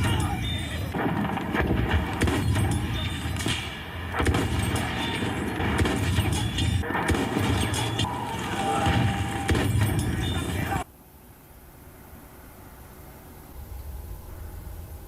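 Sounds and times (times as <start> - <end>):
rapid gunshots and impacts: 0.0 - 10.8.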